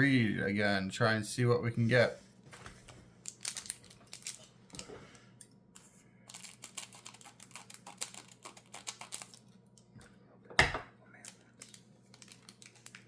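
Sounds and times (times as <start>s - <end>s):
foil wrapper crinkling: 2.8s - 4.8s, 6.3s - 9.6s, 11.2s - 13.0s.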